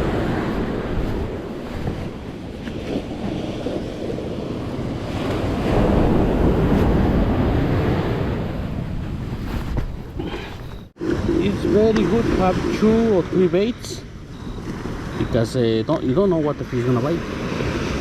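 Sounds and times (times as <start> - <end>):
surf waves washing on beach: 0.0 - 9.2, 11.0 - 18.0
wind rumbling on microphone: 0.0 - 15.4.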